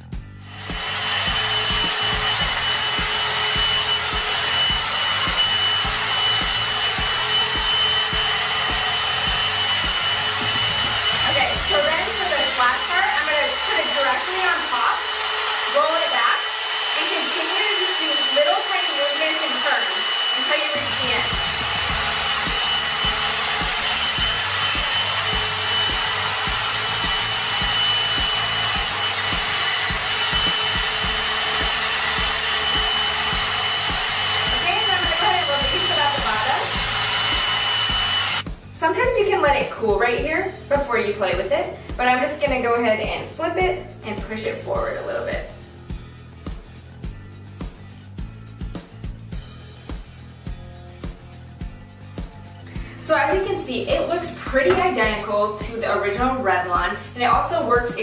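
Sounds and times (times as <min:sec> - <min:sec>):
hot air brush blowing: 0:00.3 - 0:39.7, 0:52.6 - 0:58.0
high-pitched motor whine: 0:00.5 - 0:38.5.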